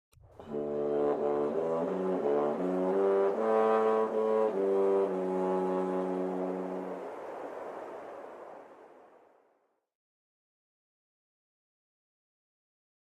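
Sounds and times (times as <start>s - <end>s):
brass-toned held chords: 0.4s - 7.1s.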